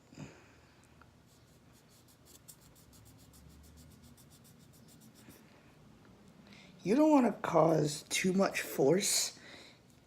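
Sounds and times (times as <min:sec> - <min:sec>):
cotton swab scrubbing: 0:01.3 - 0:05.3.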